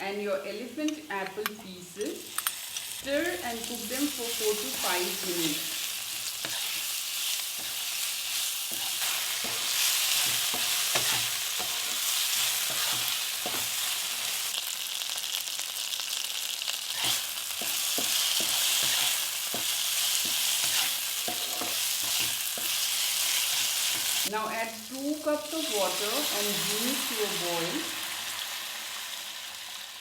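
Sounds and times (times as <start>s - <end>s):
food sizzling in hot oil: 1.0s - 30.0s
spatula scraping and tapping pan: 6.1s - 6.9s, 7.6s - 13.8s, 17.0s - 24.2s.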